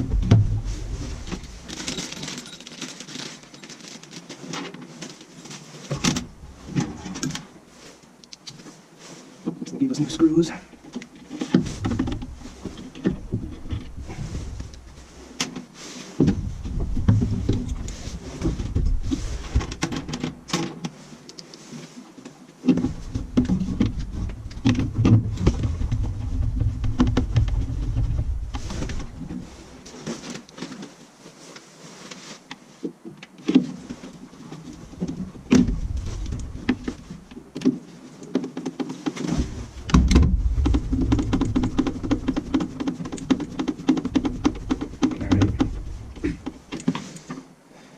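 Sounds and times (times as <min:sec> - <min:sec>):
clatter of parts and tools: 0:00.0 - 0:06.2.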